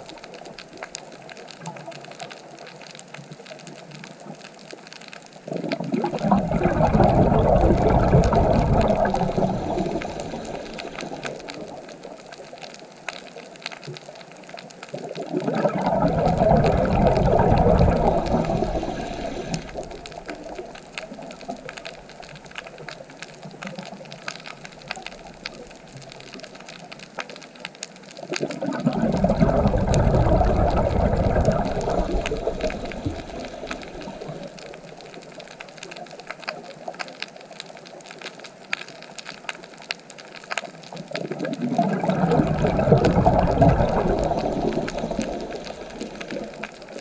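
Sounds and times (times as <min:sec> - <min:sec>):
sea waves washing up shore: 0:05.5 - 0:12.2, 0:15.0 - 0:22.8, 0:28.2 - 0:35.2, 0:41.2 - 0:47.0.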